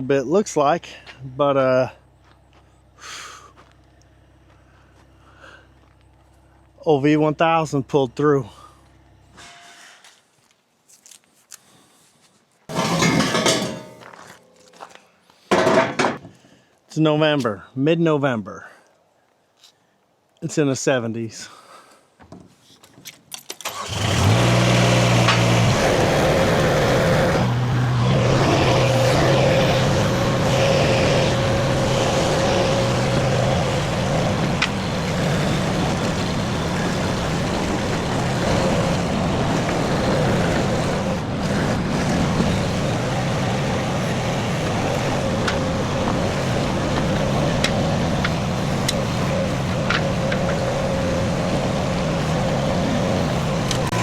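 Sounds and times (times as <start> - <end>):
mini skid steer engine running: 12.7 - 14.2, 23.6 - 54.0.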